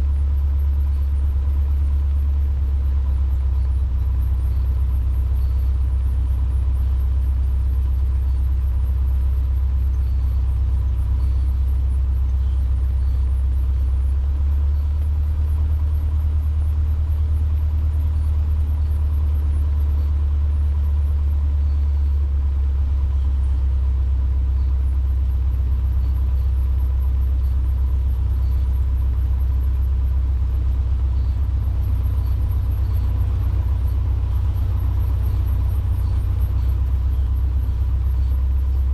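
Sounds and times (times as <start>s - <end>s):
aircraft engine droning: 0.0s - 38.9s.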